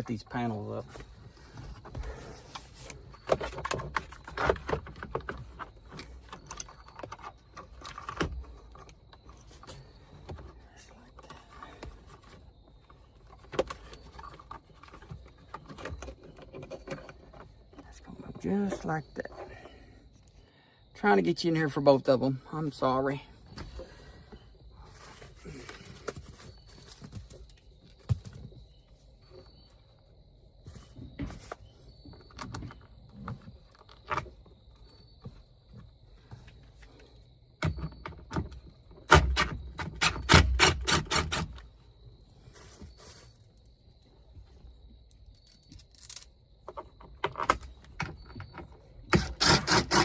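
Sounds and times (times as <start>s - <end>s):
handling clicks and scrapes: 0.8s - 19.8s.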